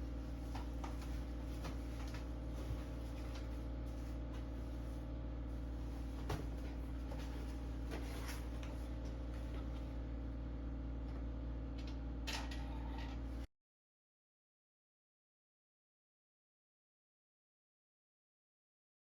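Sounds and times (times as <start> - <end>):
steady low hum: 0.0 - 13.5.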